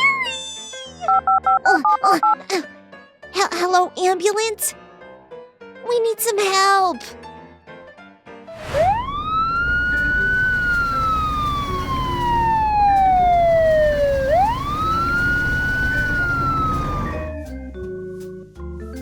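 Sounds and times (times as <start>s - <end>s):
ambulance siren wailing: 8.6s - 17.4s
low rumble: 8.6s - 17.4s.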